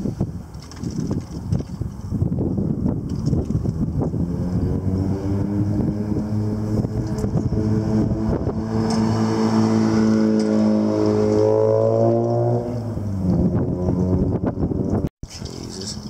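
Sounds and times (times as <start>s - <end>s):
wind buffeting microphone: 0.0s - 16.0s
vehicle engine running: 3.5s - 11.6s.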